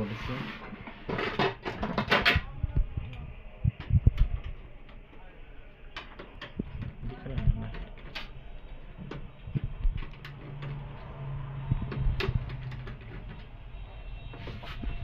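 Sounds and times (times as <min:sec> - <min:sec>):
plastic parts clicking and knocking: 0:00.6 - 0:02.9, 0:05.9 - 0:11.1, 0:11.7 - 0:13.6.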